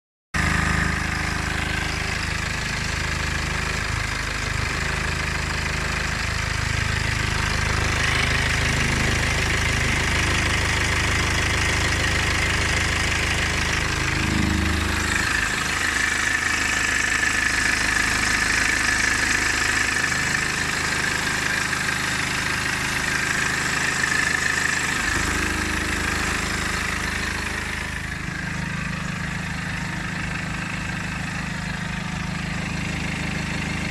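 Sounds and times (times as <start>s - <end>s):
diesel engine idling: 0.4s - 33.9s.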